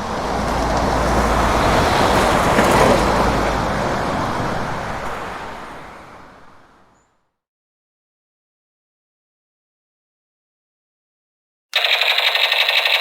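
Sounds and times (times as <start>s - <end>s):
truck passing by: 0.0s - 7.2s.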